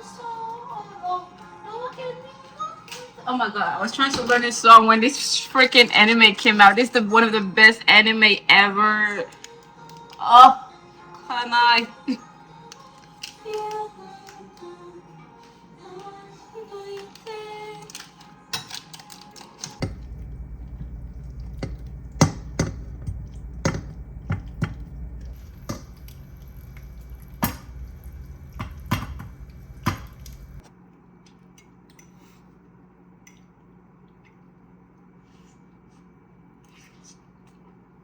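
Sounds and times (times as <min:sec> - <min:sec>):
steady low hum: 0:19.8 - 0:30.6.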